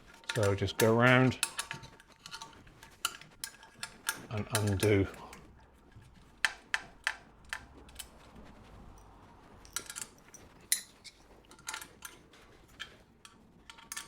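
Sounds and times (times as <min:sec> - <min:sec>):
spanners clinking on metal bolts: 0:00.2 - 0:05.4.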